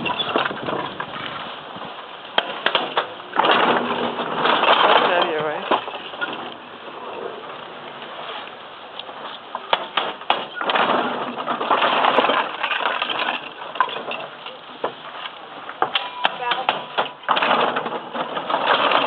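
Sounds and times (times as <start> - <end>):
wooden and metal knocks: 15.8 - 19.0.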